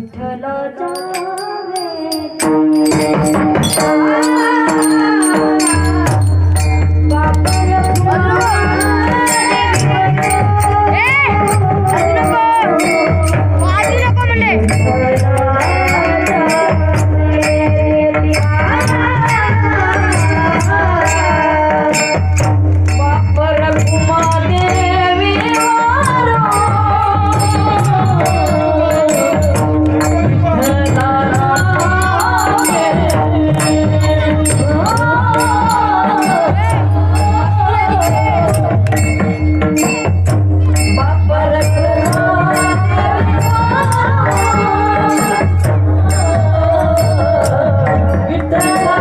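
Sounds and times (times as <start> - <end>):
person singing ornamented melody: 0.0 - 22.1
metallic percussion strokes: 0.0 - 49.0
drum beat: 2.1 - 49.0.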